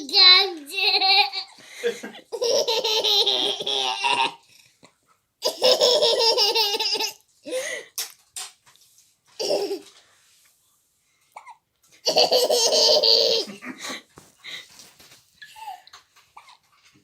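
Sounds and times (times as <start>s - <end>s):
child giggling: 1.1s - 4.4s, 5.4s - 7.6s, 12.1s - 14.1s.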